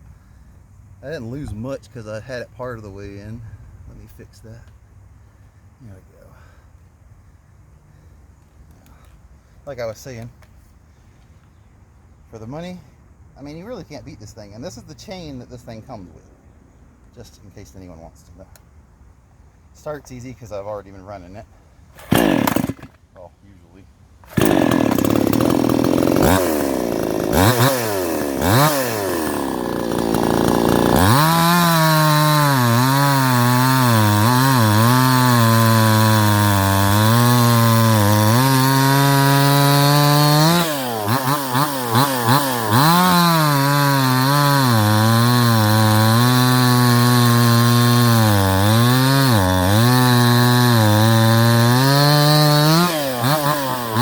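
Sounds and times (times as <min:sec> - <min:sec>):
chainsaw revving and cutting wood: 0:22.0 - 0:23.0, 0:24.2 - 0:54.0.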